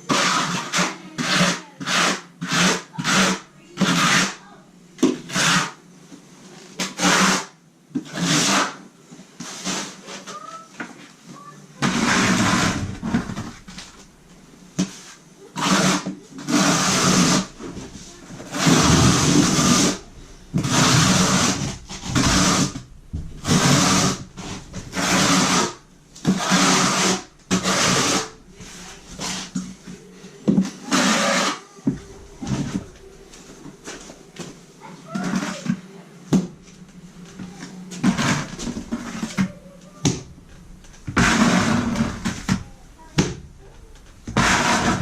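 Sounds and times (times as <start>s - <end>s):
trowel scraping mortar: 0.0s - 4.5s, 6.8s - 8.8s, 11.8s - 14.1s, 14.8s - 30.1s, 30.7s - 34.5s, 37.2s - 40.2s, 41.1s - 43.3s, 43.9s - 45.0s.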